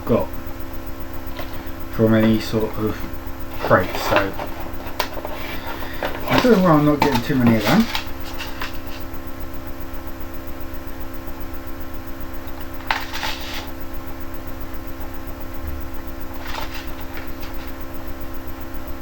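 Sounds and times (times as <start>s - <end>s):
electrical hum: 0.0s - 19.0s
packaging rustling: 1.3s - 2.7s, 3.4s - 9.2s, 12.4s - 13.8s, 16.3s - 17.9s.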